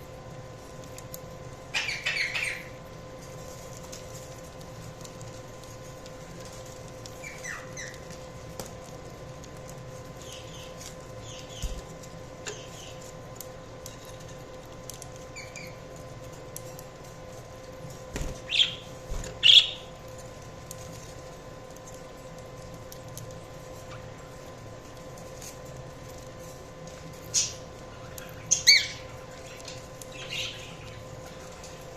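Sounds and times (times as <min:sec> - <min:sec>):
faint steady hum: 0:00.0 - 0:31.9
budgerigars chirping: 0:01.8 - 0:02.7, 0:19.4 - 0:19.8.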